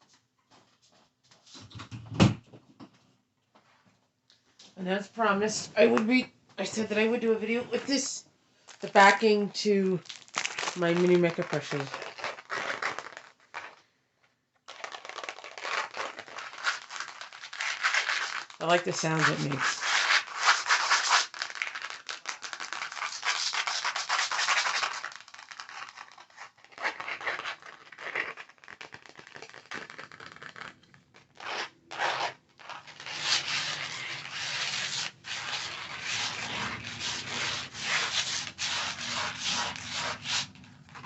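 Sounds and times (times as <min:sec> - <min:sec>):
paper card rubbed and scratched: 0:10.8 - 0:13.8, 0:14.7 - 0:41.0.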